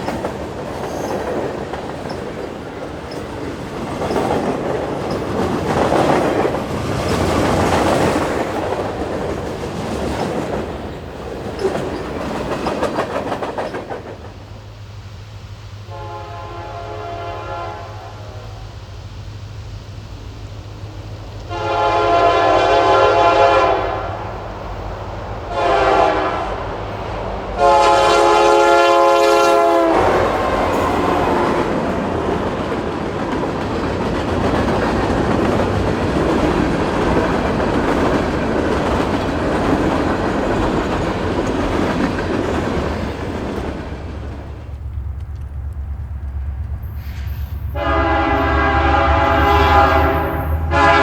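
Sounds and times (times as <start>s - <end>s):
train wheels on rails: 0.0s - 51.0s
train horn blasts: 15.8s - 18.8s, 21.5s - 24.5s, 25.5s - 27.0s, 27.6s - 31.8s, 47.0s - 51.0s.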